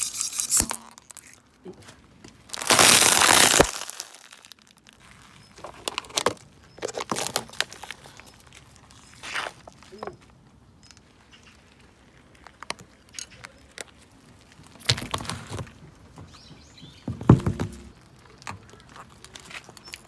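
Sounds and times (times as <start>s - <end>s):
crackles and crunches of crushing: 0.0s - 15.9s, 17.7s - 20.0s.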